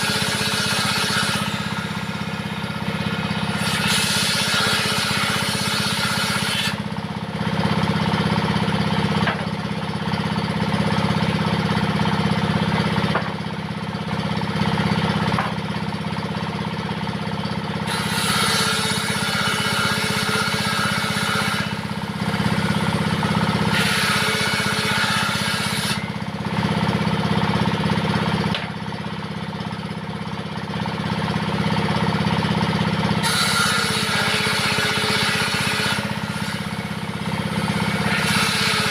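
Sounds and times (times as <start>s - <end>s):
table saw ripping wood: 0.0s - 6.9s, 17.8s - 26.2s, 33.2s - 38.9s
diesel engine running: 1.4s - 3.7s, 6.8s - 18.0s, 21.7s - 24.5s, 26.0s - 33.2s, 34.8s - 38.9s.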